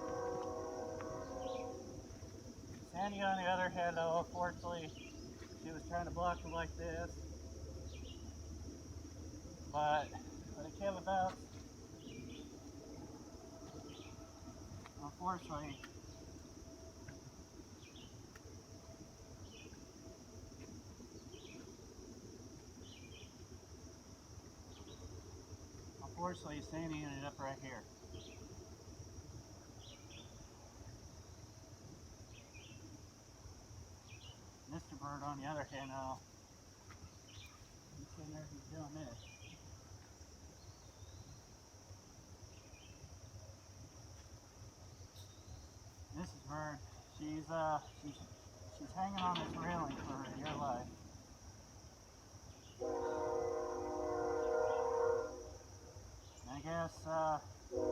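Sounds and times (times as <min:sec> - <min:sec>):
high-pitched insect chorus: 0:00.0 - 0:57.9
low outdoor rumble: 0:43.1 - 0:52.6.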